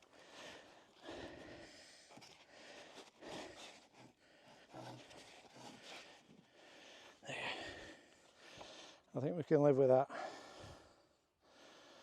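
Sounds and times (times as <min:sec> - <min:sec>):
faint breaths: 0:00.0 - 0:09.2, 0:10.0 - 0:12.0
soft rustles: 0:02.0 - 0:06.5.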